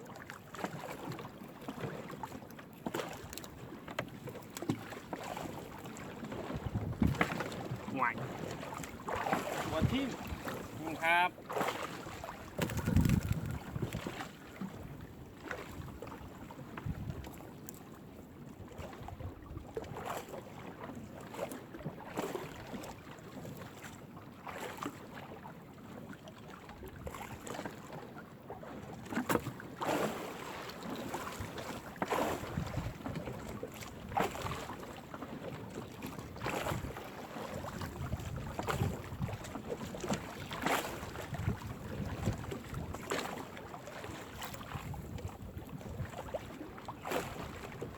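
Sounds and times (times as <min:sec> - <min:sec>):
wind on microphone: 0:06.6 - 0:08.2, 0:09.6 - 0:11.1, 0:12.6 - 0:14.1, 0:16.8 - 0:17.4, 0:32.4 - 0:33.0, 0:37.8 - 0:39.5, 0:41.0 - 0:43.1, 0:44.7 - 0:46.3
net splashing and knocking: 0:12.5 - 0:14.0.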